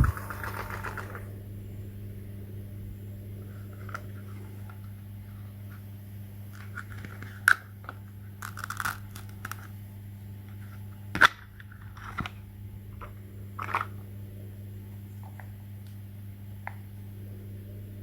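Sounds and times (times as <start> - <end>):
low electrical hum: 0.0 - 18.0
crunching crackling noises: 3.6 - 14.1.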